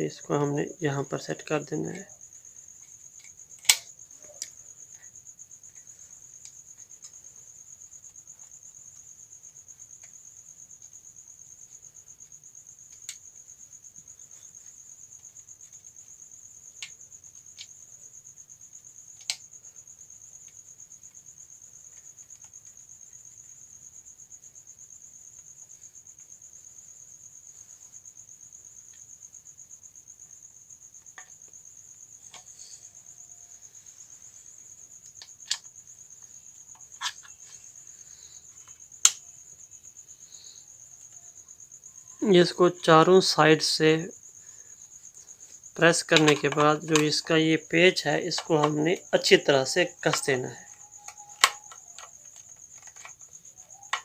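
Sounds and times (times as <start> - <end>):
cricket trilling: 0.0 - 54.0.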